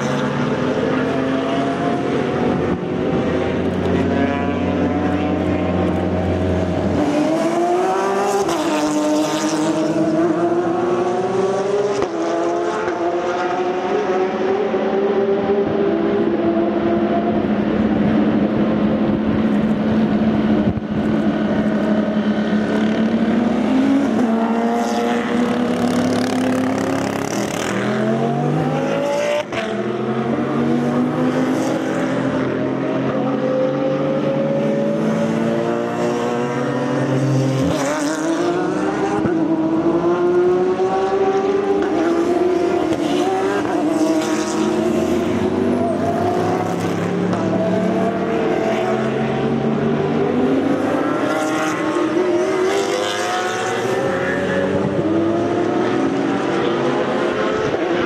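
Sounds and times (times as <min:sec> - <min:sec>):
race car engines passing: 0:00.0 - 0:58.0.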